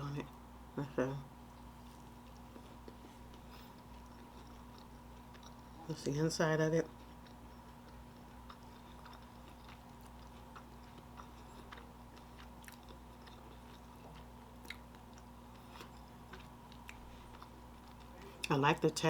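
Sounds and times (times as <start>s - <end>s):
steady background hum: 0.0s - 19.0s
faint chewing mouth clicks: 7.0s - 18.5s.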